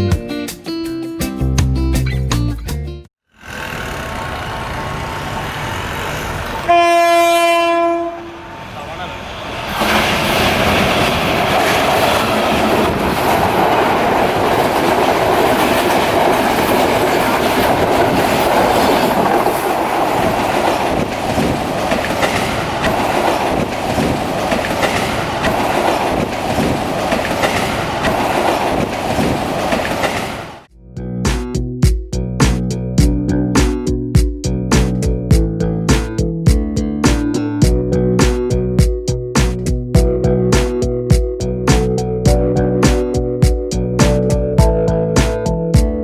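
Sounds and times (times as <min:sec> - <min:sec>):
train rushing rumble: 0:03.5 - 0:30.7
wheel clacks over rail joints: 0:10.8 - 0:30.3.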